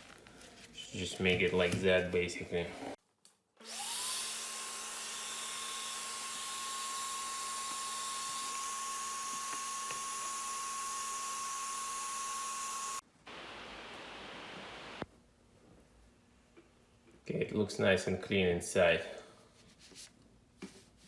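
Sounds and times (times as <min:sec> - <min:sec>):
vacuum cleaner motor whining: 0:03.6 - 0:15.0
quiet hiss: 0:13.0 - 0:21.0.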